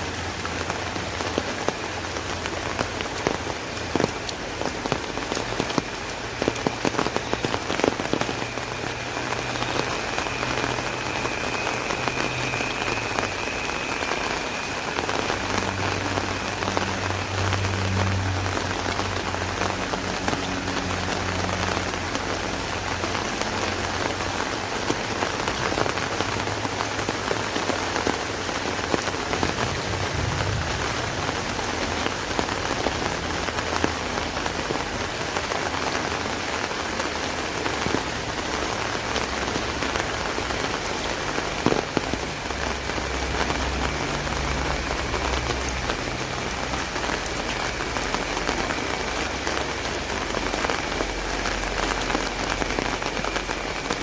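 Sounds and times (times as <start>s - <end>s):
rain on an umbrella: 0.0s - 54.0s
low steady hum: 29.1s - 34.4s.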